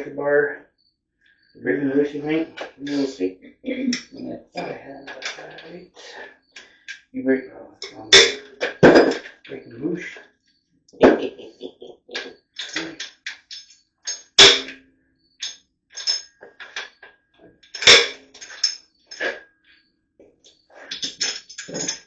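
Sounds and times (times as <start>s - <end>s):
tools and metal parts clinking: 12.6s - 14.7s, 15.4s - 19.4s, 20.9s - 22.0s.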